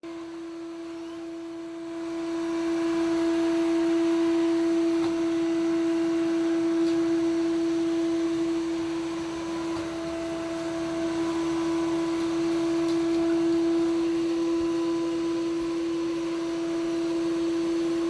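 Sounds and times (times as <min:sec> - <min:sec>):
robot vacuum cleaner humming: 0:00.2 - 0:18.0.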